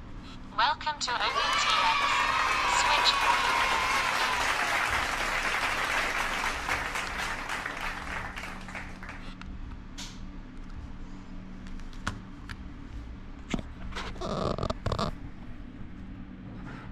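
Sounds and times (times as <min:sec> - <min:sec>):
applause: 0:01.2 - 0:09.4.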